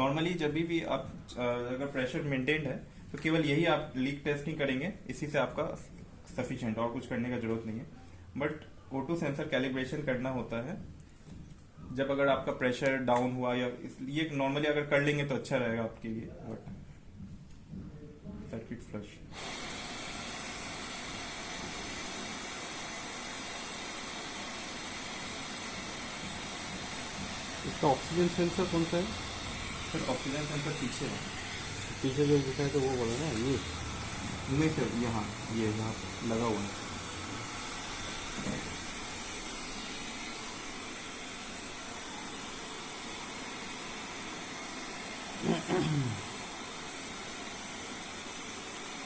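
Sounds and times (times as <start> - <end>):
ventilator air rushing: 19.2 - 49.0.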